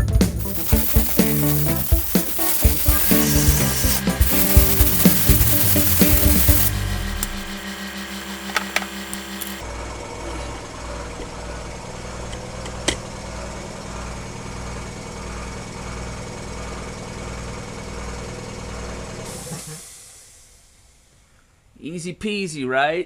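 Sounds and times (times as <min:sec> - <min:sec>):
motor running with low throb: 0:00.4 - 0:09.6.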